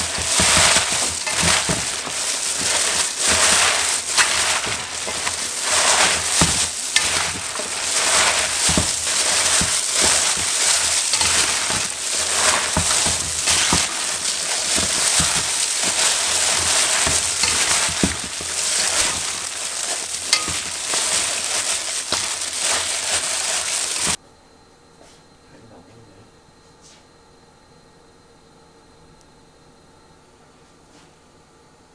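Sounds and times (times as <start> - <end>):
food sizzling in a frying pan: 0.0 - 24.2
utensil stirring and scraping: 0.0 - 24.2.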